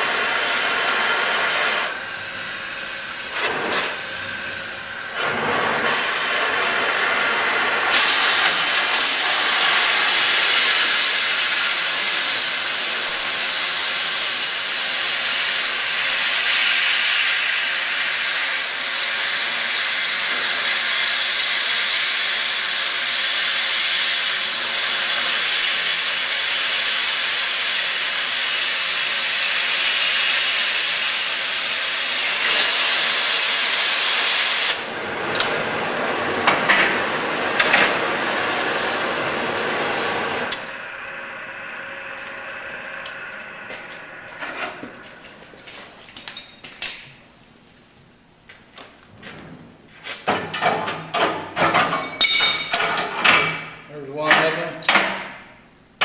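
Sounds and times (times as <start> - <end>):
cutting torch hissing: 0.0 - 35.5.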